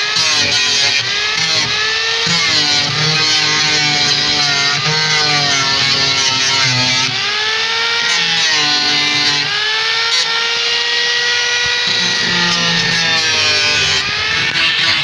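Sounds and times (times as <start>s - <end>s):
electric power tool whining: 0.0s - 15.0s.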